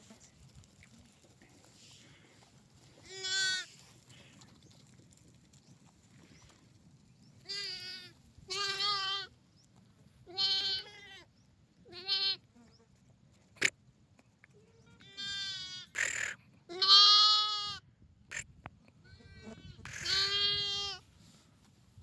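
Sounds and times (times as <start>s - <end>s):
lamb bleating: 3.0s - 3.7s, 7.5s - 9.3s, 10.3s - 11.2s, 11.9s - 12.4s, 15.0s - 18.4s, 19.0s - 21.0s.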